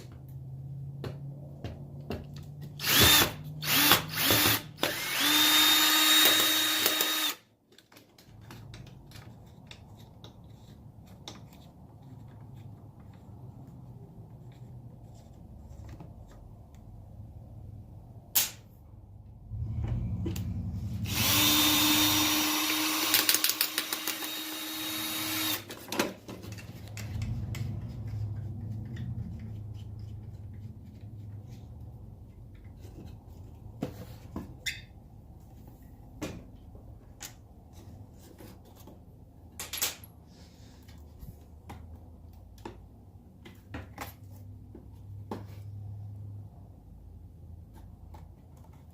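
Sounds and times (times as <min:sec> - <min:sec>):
power drill running: 0:02.8 - 0:07.4, 0:21.0 - 0:25.7.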